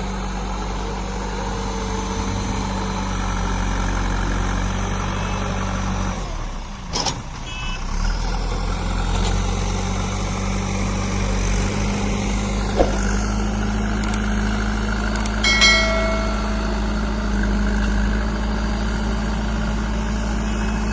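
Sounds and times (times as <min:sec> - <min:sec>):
diesel engine running: 0:08.4 - 0:20.9
sharp knocks: 0:12.7 - 0:13.2, 0:15.5 - 0:17.0.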